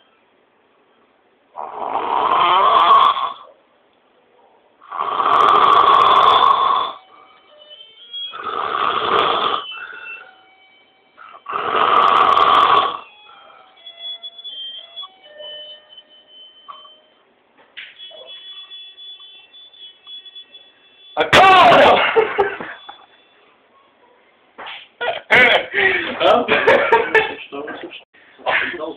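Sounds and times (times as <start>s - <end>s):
man snoring loudly: 1.6s - 3.5s, 4.9s - 7.0s, 8.4s - 9.8s, 11.4s - 13.1s.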